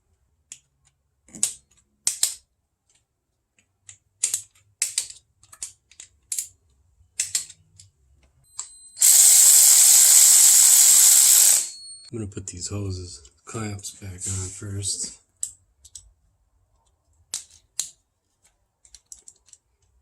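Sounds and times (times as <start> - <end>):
hand ratchet clicking: 9.0 - 11.8
power tool whirring: 9.0 - 12.1.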